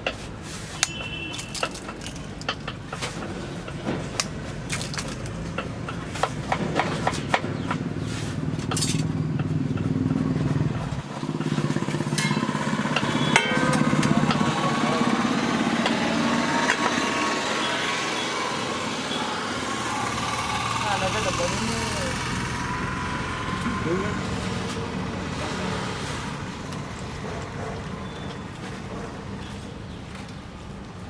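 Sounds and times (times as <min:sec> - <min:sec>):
low motor drone: 0:09.2 - 0:27.0.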